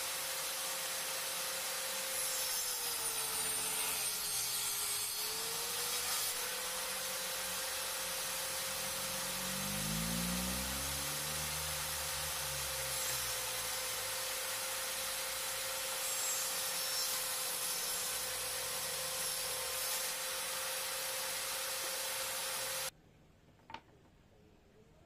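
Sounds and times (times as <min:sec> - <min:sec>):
power tool rasping wood: 0:00.0 - 0:22.9.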